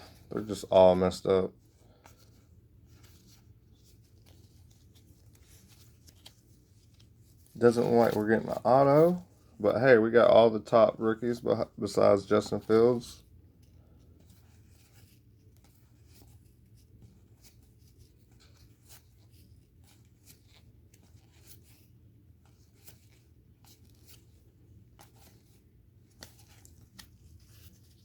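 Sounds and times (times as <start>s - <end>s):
low steady hum: 0.0s - 28.0s
trading cards clicking and rustling: 3.9s - 9.2s.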